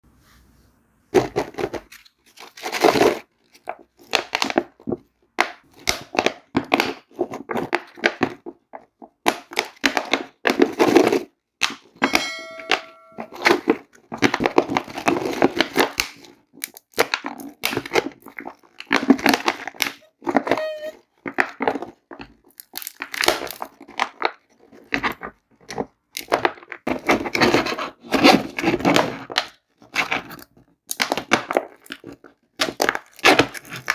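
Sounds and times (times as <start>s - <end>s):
short ringing tone: 12.0s - 13.4s, 20.6s - 21.0s.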